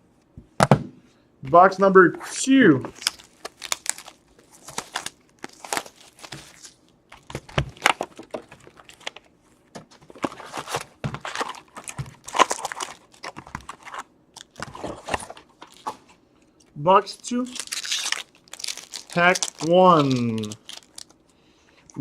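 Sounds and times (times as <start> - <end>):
plastic wrapping crinkling and tearing: 2.9 - 9.3, 10.1 - 16.0, 17.2 - 21.2.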